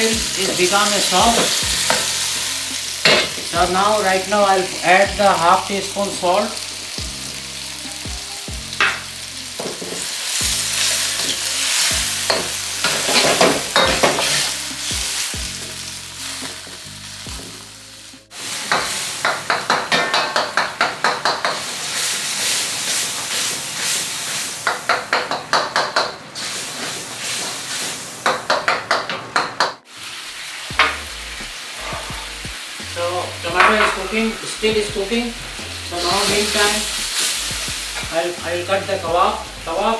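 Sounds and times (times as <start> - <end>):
tomatoes sizzling in oil: 0.0 - 28.9, 29.7 - 39.9
spatula scraping pan: 8.8 - 15.7.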